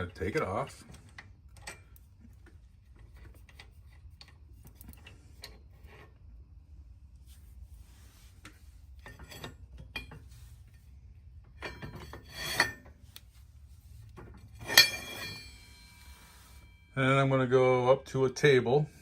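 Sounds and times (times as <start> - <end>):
metal parts clinking: 14.2 - 15.9
ringing metal clank: 14.6 - 17.0.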